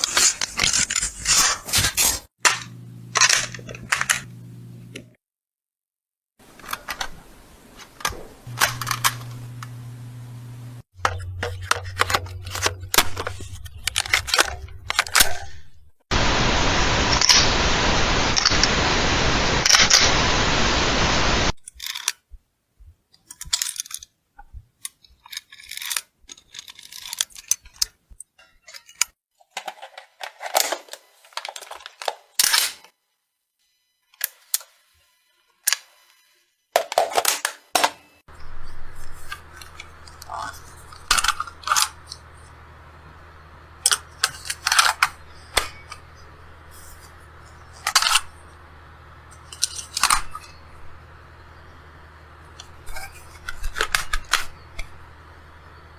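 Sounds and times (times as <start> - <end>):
steady low hum: 2.4 - 5.1, 8.2 - 17.0, 38.3 - 55.9
dense hiss-like noise: 16.1 - 21.5.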